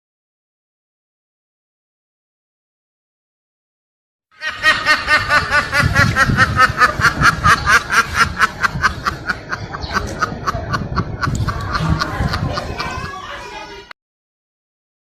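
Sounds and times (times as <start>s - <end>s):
high-pitched laughter: 4.4s - 13.8s.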